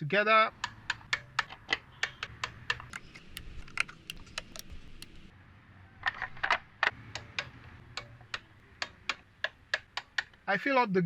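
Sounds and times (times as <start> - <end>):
hand tools clicking and clattering: 0.6 - 5.3.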